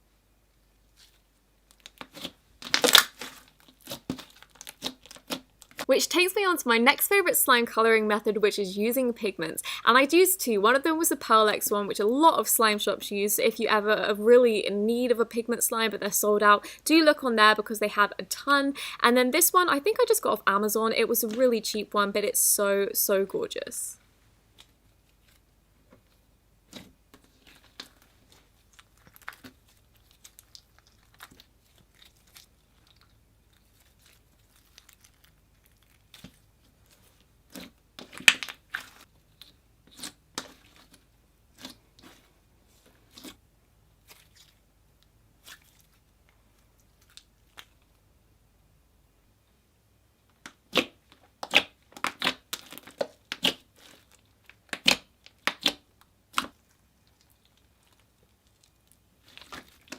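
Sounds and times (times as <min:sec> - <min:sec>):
slime clicks and crackles: 0:01.7 - 0:05.9, 0:27.4 - 0:41.0, 0:51.4 - 0:59.9
slime popping: 0:01.8 - 0:05.9.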